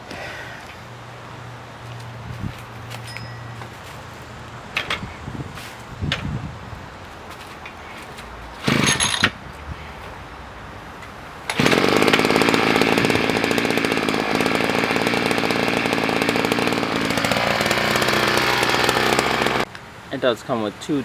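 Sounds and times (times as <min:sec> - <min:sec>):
pile driver engine running: 0:11.5 - 0:19.7.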